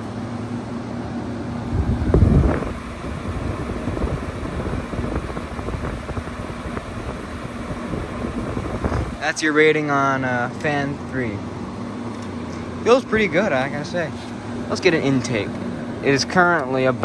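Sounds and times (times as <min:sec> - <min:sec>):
air conditioner humming: 0:00.0 - 0:17.0
wind buffeting microphone: 0:01.6 - 0:09.2.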